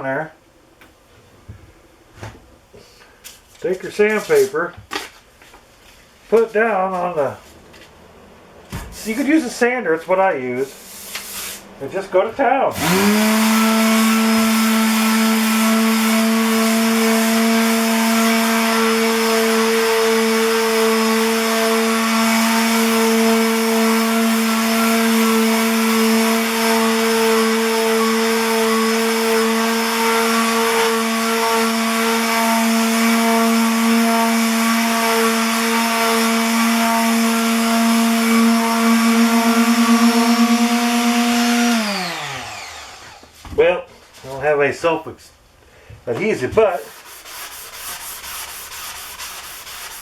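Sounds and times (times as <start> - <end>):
electric sander running: 12.7 - 43.4.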